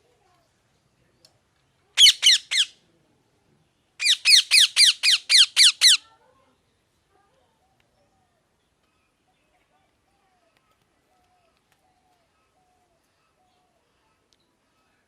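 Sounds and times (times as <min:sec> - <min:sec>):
parrot squawking: 0:02.0 - 0:02.7, 0:04.0 - 0:06.0.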